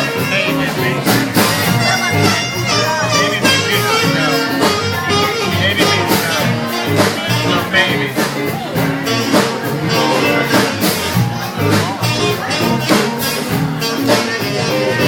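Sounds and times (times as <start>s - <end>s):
live band playing: 0.0s - 15.0s.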